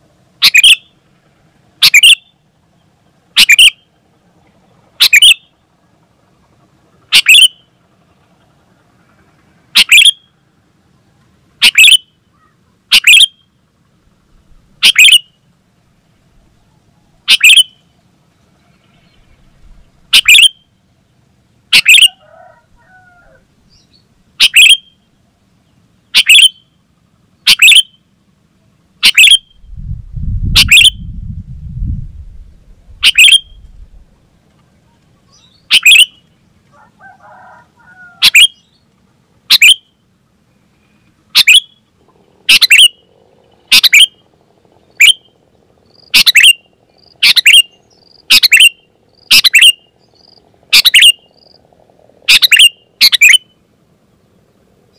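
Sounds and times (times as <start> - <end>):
bulbul calling in sharp notes: 0.4 - 1.0, 1.8 - 2.4, 3.3 - 3.9, 5.0 - 5.5, 7.1 - 7.7, 9.7 - 10.3, 11.6 - 13.4, 14.8 - 15.4, 17.2 - 17.9, 19.1 - 20.7, 21.7 - 22.2, 23.7 - 25.0, 26.1 - 26.7, 27.4 - 28.1, 29.0 - 29.8, 30.5 - 31.1, 33.0 - 33.8, 35.2 - 36.3, 38.0 - 38.8, 39.5 - 40.0, 41.3 - 51.6, 52.3 - 53.6
low rumble: 29.5 - 34.4.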